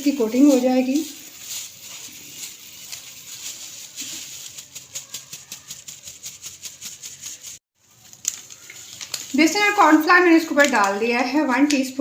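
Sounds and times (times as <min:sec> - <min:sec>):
strainer ticking while sifting flour: 0:00.0 - 0:07.6.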